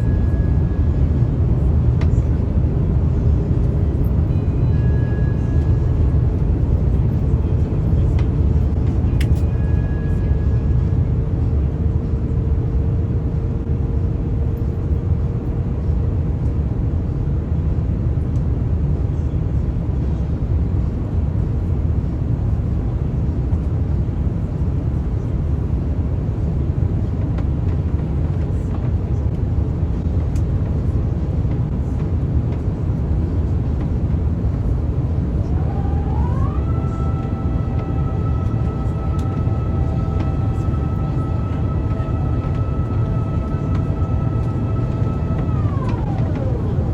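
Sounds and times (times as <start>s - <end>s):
jet engine cabin rumble: 0.0s - 46.9s
faint hum: 24.4s - 46.9s.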